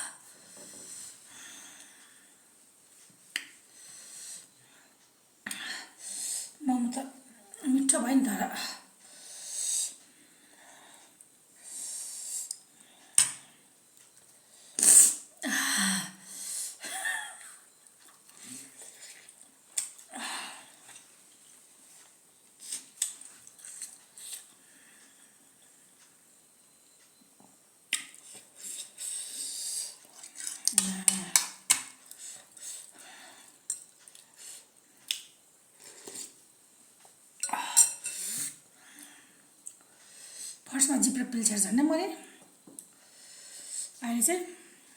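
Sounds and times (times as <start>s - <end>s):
high hissy noise: 9.2s - 10.0s, 11.6s - 12.6s, 14.6s - 15.3s, 37.8s - 38.7s
woman hissing and puffing air: 14.8s - 15.3s
cutlery scraping against dishes: 37.8s - 38.3s.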